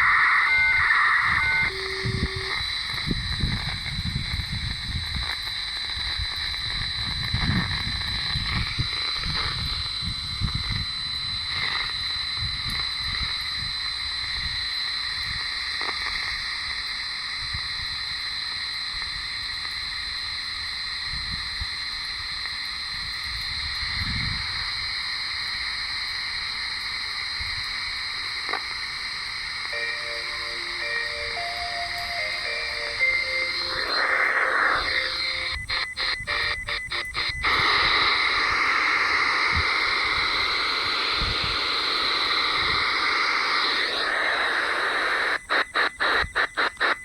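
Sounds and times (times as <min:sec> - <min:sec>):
steady high whistle: 0:00.0 - 0:05.0, 0:29.7 - 0:47.0
radio static hiss: 0:00.0 - 0:47.0.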